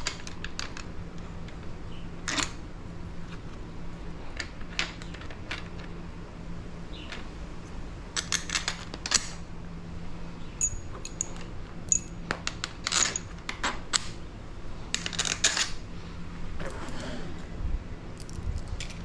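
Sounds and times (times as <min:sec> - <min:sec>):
small metal parts clinking: 0:00.0 - 0:02.6, 0:08.2 - 0:09.4, 0:10.6 - 0:14.1, 0:14.9 - 0:15.8.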